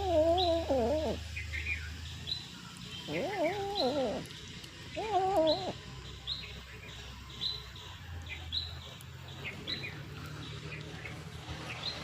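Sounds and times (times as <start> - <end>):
cat meowing: 3.1 - 4.2, 5.0 - 5.7.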